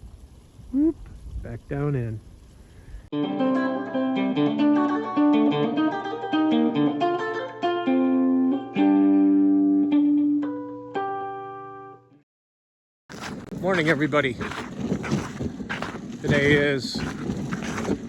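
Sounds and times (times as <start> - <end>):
plucked guitar melody: 3.2 - 12.1.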